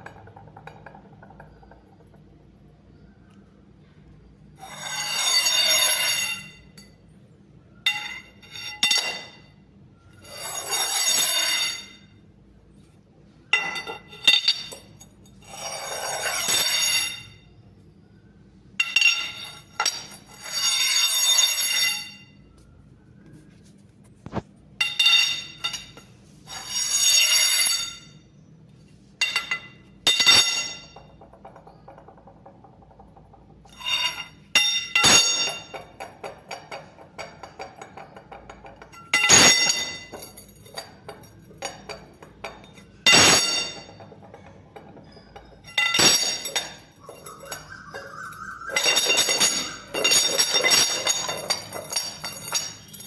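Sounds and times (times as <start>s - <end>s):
steel rods rolling and ringing: 0.0s - 3.0s, 4.5s - 12.9s, 13.5s - 17.7s, 18.7s - 22.6s, 24.8s - 28.4s, 29.0s - 53.0s
sharp metallic knocks: 29.2s - 53.0s.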